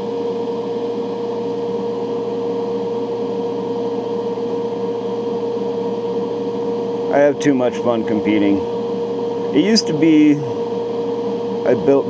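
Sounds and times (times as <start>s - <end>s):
electric fan humming: 6.4s - 12.0s.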